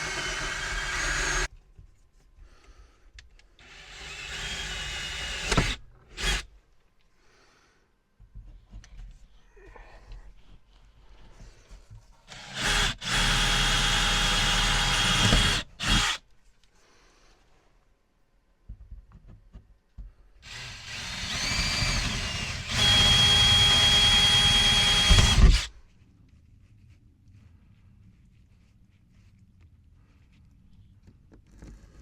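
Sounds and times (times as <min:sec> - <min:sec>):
electric power tool running: 0:00.0 - 0:01.5, 0:12.4 - 0:16.2, 0:20.5 - 0:25.7.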